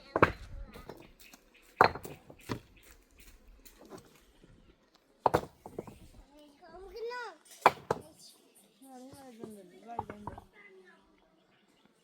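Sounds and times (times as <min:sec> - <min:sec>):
sharp knocks: 0:01.8 - 0:02.7, 0:07.6 - 0:08.1.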